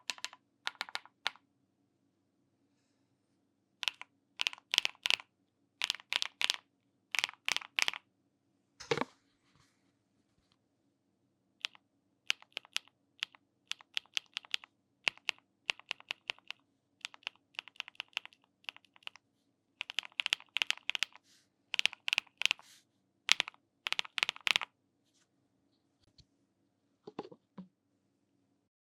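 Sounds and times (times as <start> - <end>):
mechanical keyboard typing: 0.0 - 1.4, 3.8 - 5.2, 5.8 - 8.0, 11.6 - 19.2, 19.8 - 22.6, 23.3 - 24.7.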